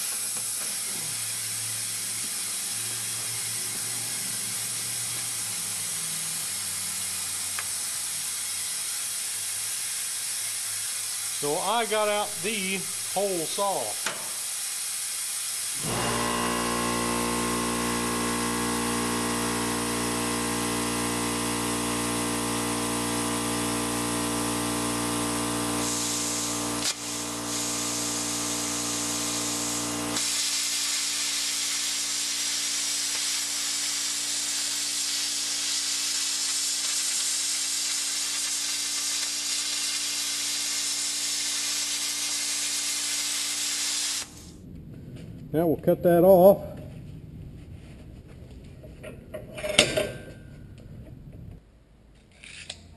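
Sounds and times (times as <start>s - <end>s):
constant hiss: 0.0s - 15.8s, 25.8s - 47.0s.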